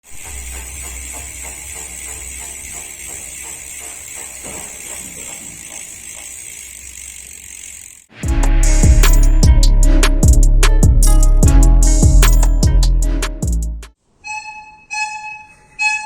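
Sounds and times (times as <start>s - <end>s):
bicycle hub ratchet ticking: 0.0s - 8.1s
scraping hiss inside hub: 0.0s - 8.2s
loud music with drums: 8.2s - 13.8s.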